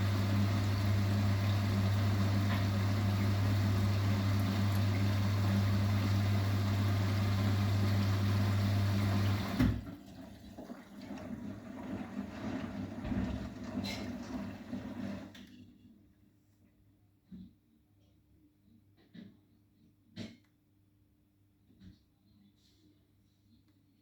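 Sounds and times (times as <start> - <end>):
water rushing: 0.0 - 9.8
washing machine humming: 0.0 - 15.4.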